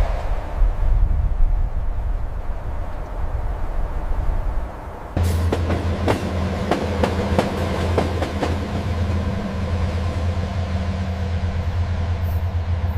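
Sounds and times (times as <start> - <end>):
locomotive engine hum: 4.8 - 12.9.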